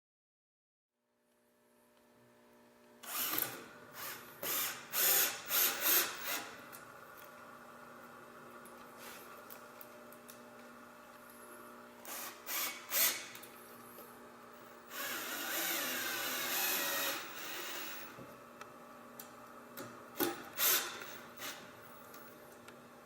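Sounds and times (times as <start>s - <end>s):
power drill driving screw: 3.0s - 6.6s, 12.0s - 13.5s, 14.9s - 18.2s, 20.2s - 21.7s.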